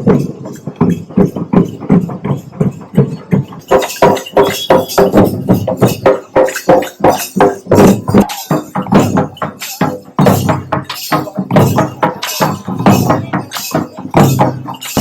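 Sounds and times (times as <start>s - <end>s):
drums beating fast: 0.0s - 15.0s
jingling metal percussion: 0.0s - 15.0s.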